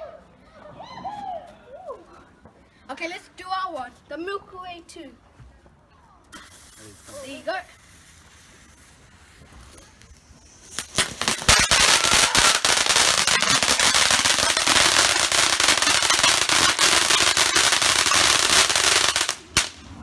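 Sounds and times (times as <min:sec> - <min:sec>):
firework crackling and hiss: 0:06.3 - 0:20.0
firework cracks: 0:06.3 - 0:20.0.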